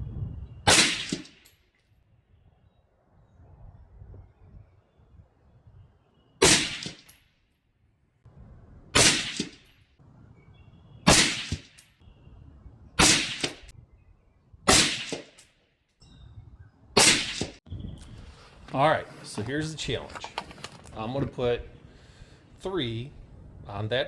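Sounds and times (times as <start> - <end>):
suppressed rifle shots: 0.7 - 1.4, 6.4 - 7.1, 9.0 - 9.6, 11.1 - 11.7, 13.0 - 13.7, 14.7 - 15.4, 17.0 - 17.6.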